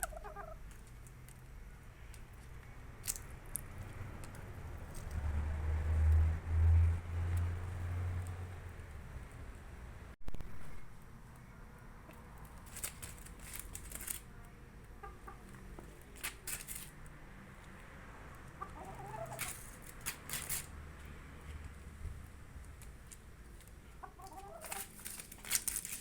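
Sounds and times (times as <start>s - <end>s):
chickens clucking: 0.0s - 0.8s, 14.8s - 16.2s, 18.4s - 20.1s, 23.7s - 25.1s.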